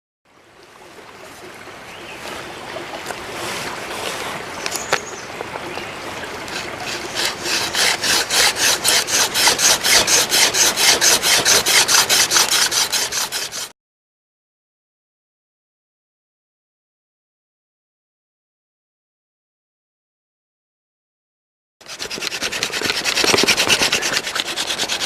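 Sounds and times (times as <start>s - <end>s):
friction fire drill rasping: 6.5s - 13.7s, 21.8s - 25.0s.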